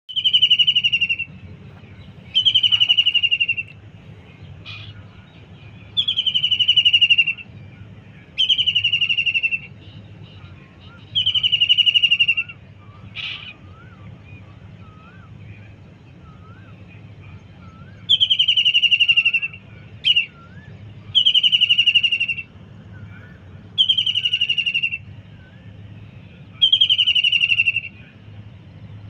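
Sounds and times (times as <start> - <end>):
faint wavering whistle: 0.1 - 1.4, 2.2 - 3.8, 4.7 - 7.5, 8.4 - 15.6, 16.2 - 28.1
kingfisher trill: 0.1 - 7.5, 8.3 - 13.7, 18.0 - 20.5, 21.1 - 22.6, 23.5 - 25.1, 26.6 - 28.2.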